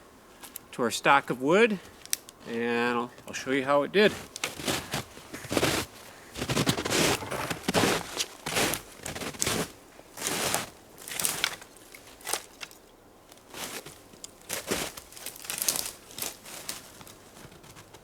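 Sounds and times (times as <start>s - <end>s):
dry branches crunching: 4.0s - 18.0s.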